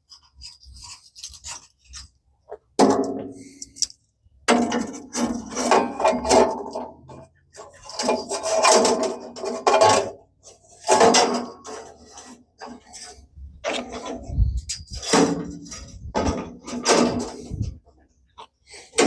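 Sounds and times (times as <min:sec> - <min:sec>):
metal scraping and clattering: 0:00.0 - 0:02.1, 0:04.5 - 0:17.8.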